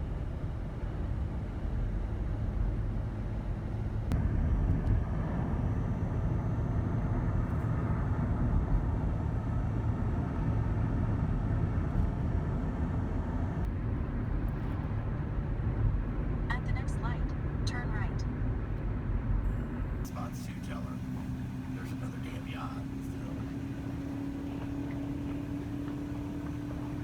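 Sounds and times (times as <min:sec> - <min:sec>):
engine running: 0:00.0 - 0:27.0
constant rushing noise: 0:20.0 - 0:27.0.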